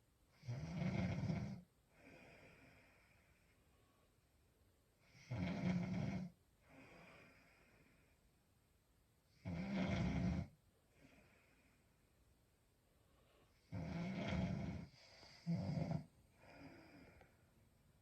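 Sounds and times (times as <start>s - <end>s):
woman snoring: 0.4s - 3.3s, 5.0s - 8.0s, 9.4s - 11.6s, 13.6s - 17.3s
soft breathy breath: 1.8s - 4.2s, 6.6s - 8.4s, 10.8s - 12.3s, 12.9s - 17.8s.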